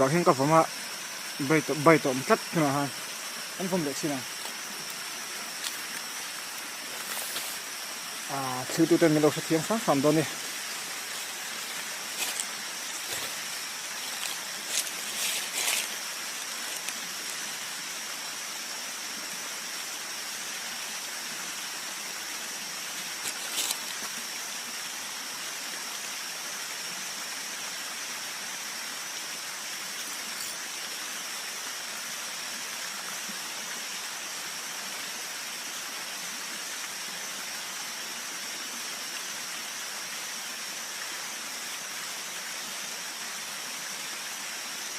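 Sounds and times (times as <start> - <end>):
stream rushing: 0.0 - 44.9.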